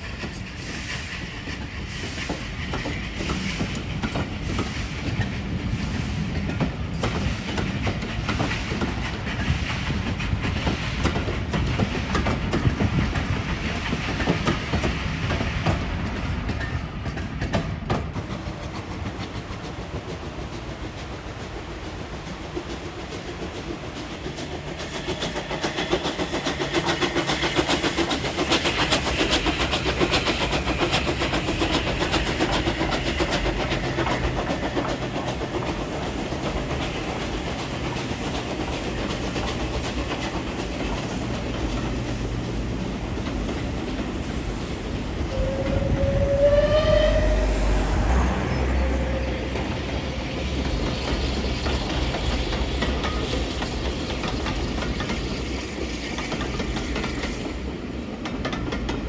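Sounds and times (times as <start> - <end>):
train wheels clattering on rails: 0.0 - 59.0
rising whistle: 45.0 - 52.4.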